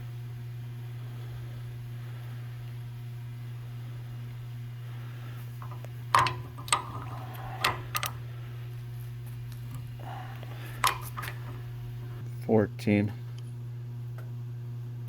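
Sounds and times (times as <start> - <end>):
steady low hum: 0.0 - 15.0
hand tool clinking on metal: 5.6 - 8.2, 10.7 - 11.6.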